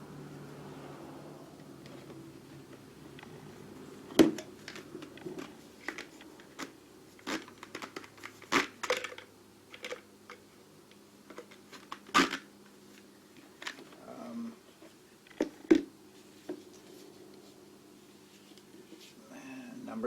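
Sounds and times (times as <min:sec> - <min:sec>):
plastic packaging crinkling: 0:04.6 - 0:10.0.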